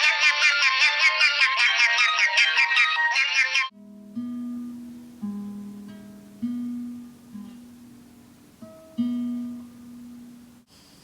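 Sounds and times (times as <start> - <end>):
acoustic guitar picked slowly: 3.7 - 11.0.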